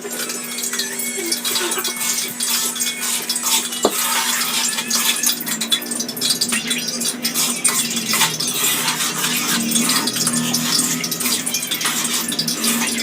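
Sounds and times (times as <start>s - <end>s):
utensils clinking and scraping pots: 0.0s - 13.0s.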